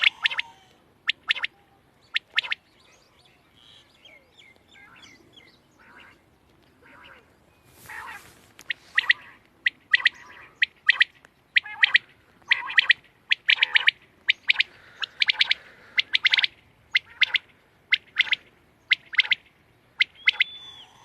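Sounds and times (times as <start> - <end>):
quail calling sharp notes: 0.0 - 2.7, 4.6 - 6.2, 6.8 - 21.0.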